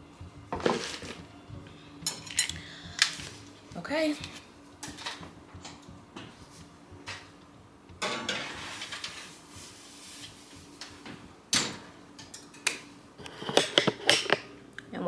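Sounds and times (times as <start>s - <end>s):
dishes and utensils clinking: 2.0s - 3.4s, 4.3s - 7.3s, 8.0s - 14.5s.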